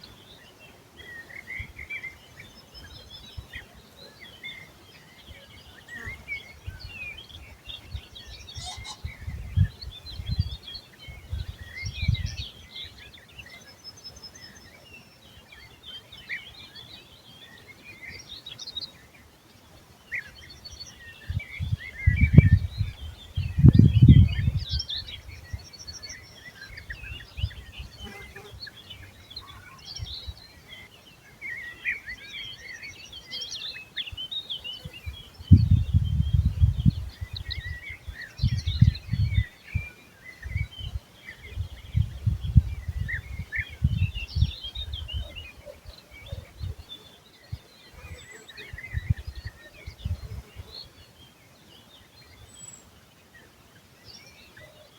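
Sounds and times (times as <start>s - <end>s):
songbirds singing and chirping: 0.0s - 54.9s.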